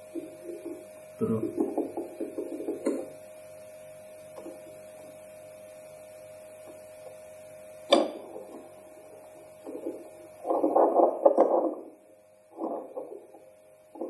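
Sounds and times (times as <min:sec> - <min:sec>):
steady hum with faint tone: 0:00.0 - 0:14.0.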